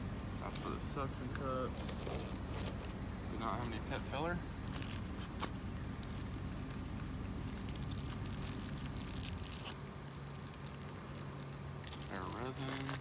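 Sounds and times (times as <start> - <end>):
steady low hum: 0.0 - 13.0
tools and packets clicking rustling: 4.7 - 13.0.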